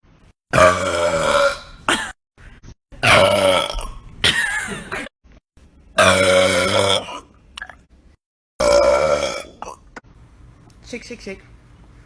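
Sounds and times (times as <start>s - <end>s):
woman burping: 3.0s - 5.0s, 6.0s - 7.2s.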